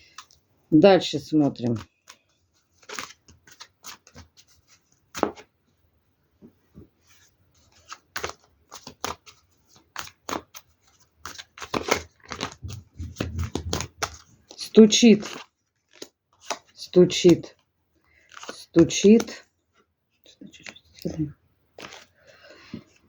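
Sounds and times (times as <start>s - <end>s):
cards being shuffled: 1.6s - 5.5s, 7.1s - 19.4s, 20.5s - 23.0s.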